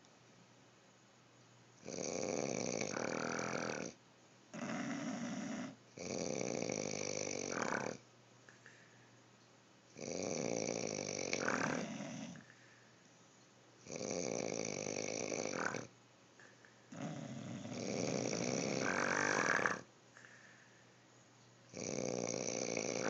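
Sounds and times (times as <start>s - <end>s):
person snoring: 1.8s - 4.0s, 4.6s - 8.0s, 10.0s - 12.5s, 13.8s - 15.9s, 16.9s - 20.7s, 21.7s - 23.0s.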